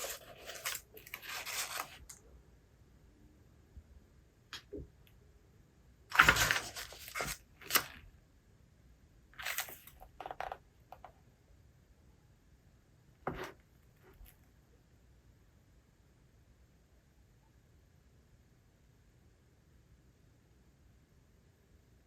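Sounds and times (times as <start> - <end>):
book pages rustling: 0.0 - 2.2, 6.1 - 8.0, 9.4 - 10.2.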